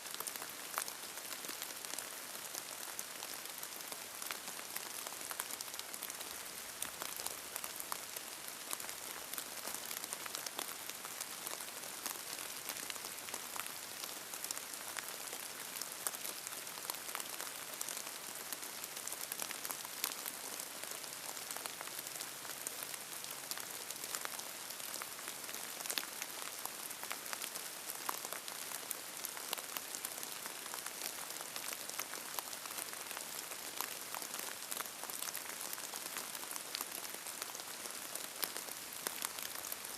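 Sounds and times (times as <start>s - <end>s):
rain on a hard surface: 0.0s - 39.9s.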